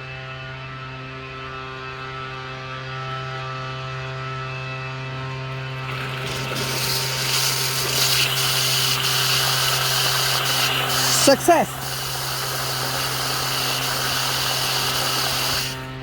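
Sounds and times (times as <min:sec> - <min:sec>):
hiss of rushing water: 0:05.8 - 0:16.0.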